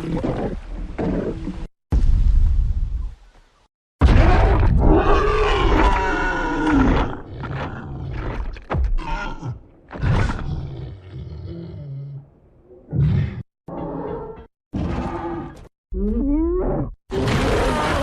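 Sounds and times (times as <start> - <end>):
monster roaring: 17.1 - 18.0.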